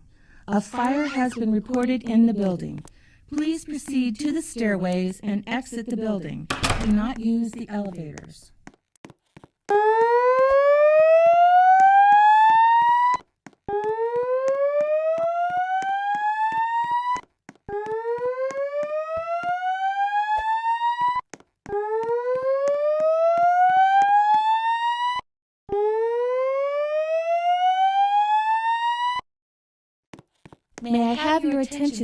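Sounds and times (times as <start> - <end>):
fire alarm whoop tone: 9.8 - 29.2.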